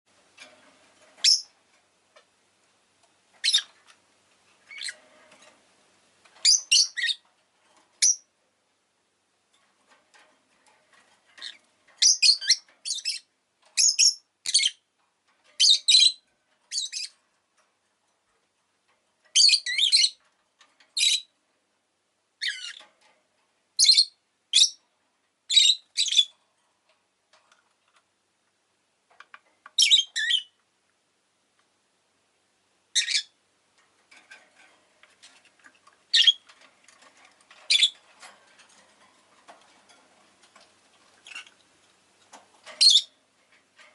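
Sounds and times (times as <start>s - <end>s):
lovebird chirping and squawking: 1.2s - 1.5s, 3.4s - 3.8s, 4.7s - 5.0s, 6.4s - 7.2s, 8.0s - 8.2s, 11.4s - 14.8s, 15.6s - 17.1s, 19.4s - 20.2s, 21.0s - 21.3s, 22.4s - 22.8s, 23.8s - 24.8s, 25.5s - 26.3s, 29.8s - 30.6s, 32.9s - 33.4s, 36.1s - 36.5s, 37.7s - 38.0s, 41.2s - 41.6s, 42.8s - 43.2s.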